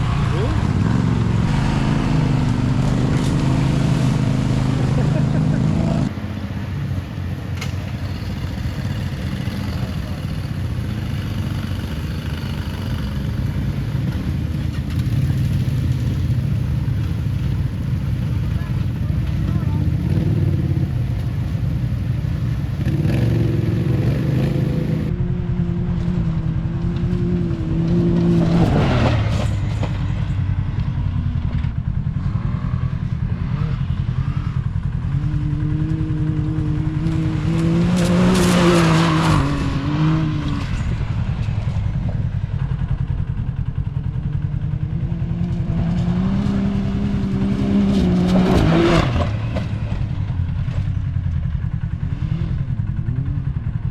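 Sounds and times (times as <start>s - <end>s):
engine revving under throttle: 0.0s - 6.2s, 22.7s - 30.3s, 31.5s - 41.4s, 45.0s - 50.1s.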